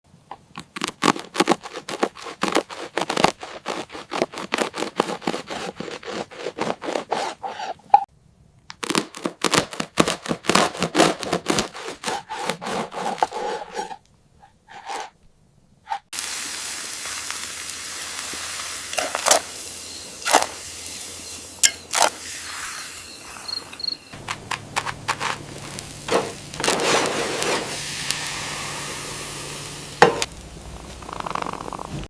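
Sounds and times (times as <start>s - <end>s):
food sizzling in a pan: 16.1s - 32.0s.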